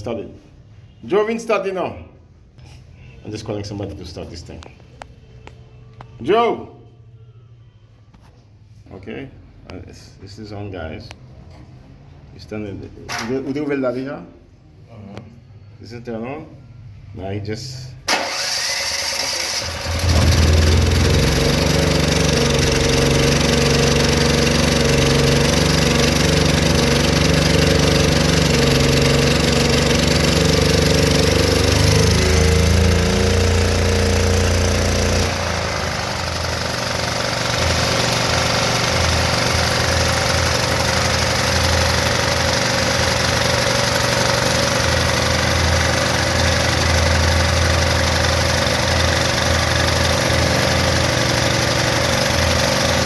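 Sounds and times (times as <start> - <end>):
generator engine running: 18.1 - 53.0.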